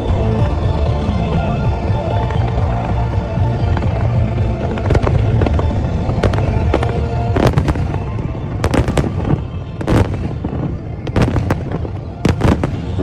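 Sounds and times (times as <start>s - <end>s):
fireworks sharp bangs: 3.6s - 13.0s.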